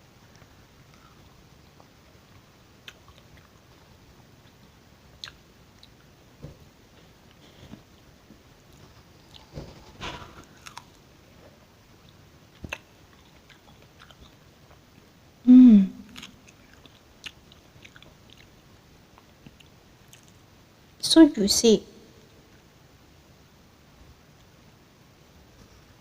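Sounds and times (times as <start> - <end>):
wet chewing: 10.4 - 11.0, 12.1 - 14.8, 16.1 - 18.6.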